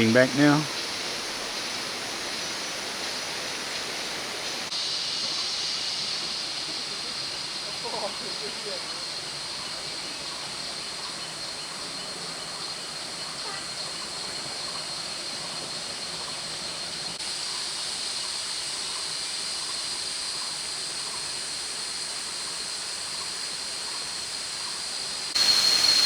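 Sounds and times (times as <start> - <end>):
forest stream flowing: 0.0 - 26.0
high-pitched whine: 25.4 - 26.0.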